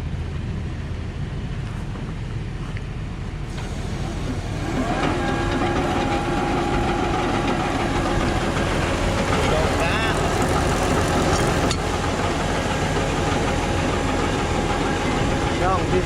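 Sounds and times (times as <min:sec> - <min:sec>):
truck engine running: 0:00.0 - 0:16.0
rising mechanical whine: 0:03.2 - 0:16.0.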